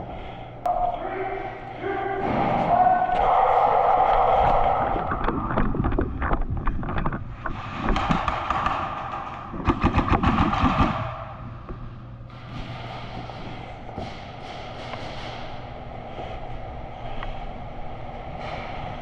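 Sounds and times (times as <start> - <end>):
airsoft guns firing bursts: 8.0 - 11.4.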